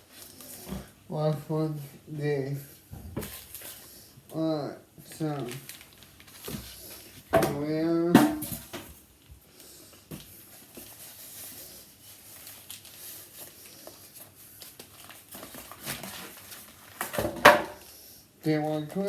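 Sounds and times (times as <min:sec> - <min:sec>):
packaging crinkling and rustling: 0:05.0 - 0:07.8, 0:08.4 - 0:17.9.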